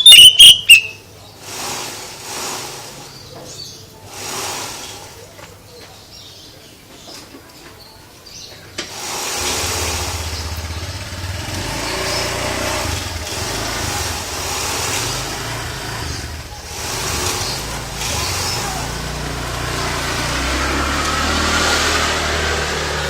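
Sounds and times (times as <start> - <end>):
engine running low rumble: 9.2 - 23.0.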